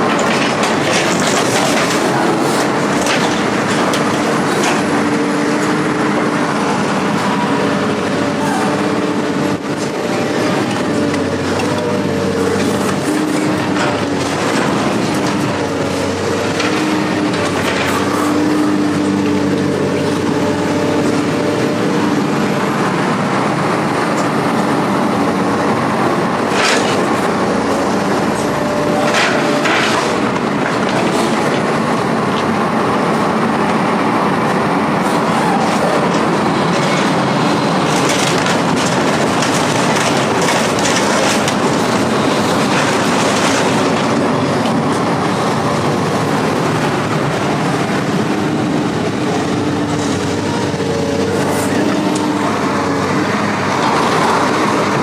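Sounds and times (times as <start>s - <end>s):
rattling and clattering: 0.0s - 5.8s, 36.0s - 44.9s
vehicle engine hum and road noise: 0.0s - 55.0s.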